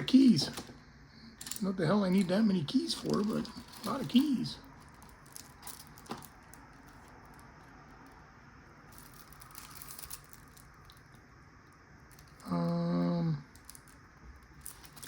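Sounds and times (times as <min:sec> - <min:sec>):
lock and keys rustling: 0:01.4 - 0:08.2, 0:08.9 - 0:11.0, 0:13.6 - 0:15.0
loud voice-like hum: 0:12.4 - 0:13.5.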